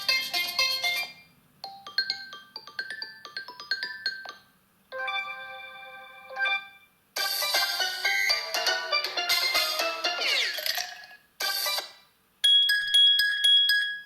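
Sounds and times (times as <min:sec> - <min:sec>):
smartphone ringtones: 0:00.7 - 0:10.4.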